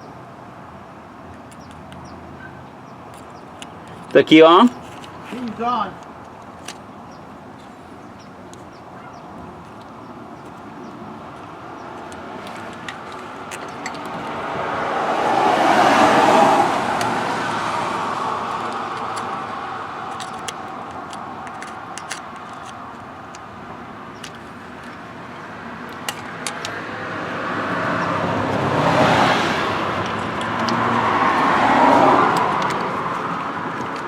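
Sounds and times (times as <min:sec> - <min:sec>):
small clicks: 0:01.3 - 0:02.2, 0:18.4 - 0:23.5, 0:29.8 - 0:34.0
vehicle passing by: 0:10.8 - 0:20.7, 0:25.4 - 0:34.0.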